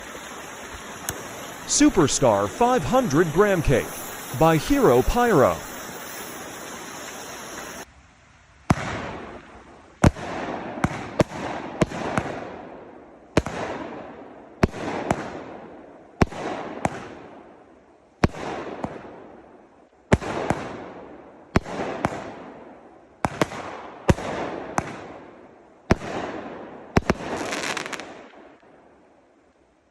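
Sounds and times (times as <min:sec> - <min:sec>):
firework bangs with crackling: 0:00.0 - 0:07.9, 0:08.7 - 0:17.4, 0:18.2 - 0:19.3, 0:20.1 - 0:25.3, 0:25.9 - 0:28.6
fuse hissing: 0:00.0 - 0:07.9.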